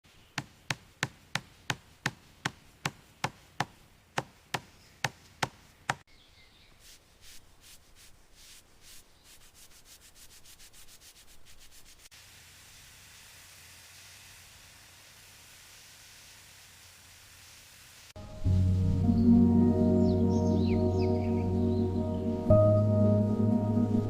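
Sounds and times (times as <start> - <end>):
sanding strokes on wood: 0.4 - 6.0, 6.8 - 18.2
sharp knocks on wood: 0.4 - 6.0.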